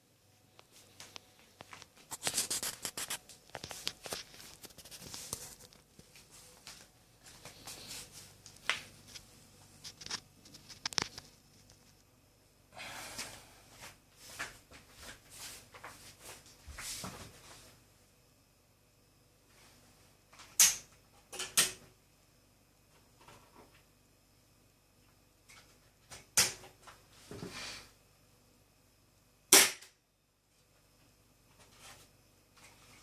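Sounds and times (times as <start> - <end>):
hands rustling objects: 0.7 - 12.0.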